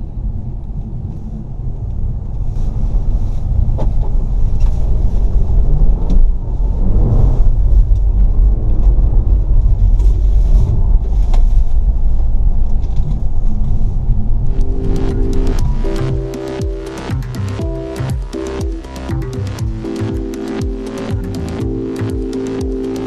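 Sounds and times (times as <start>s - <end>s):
car driving through snow rumble: 0.1s - 15.9s
electronic music: 14.5s - 23.0s.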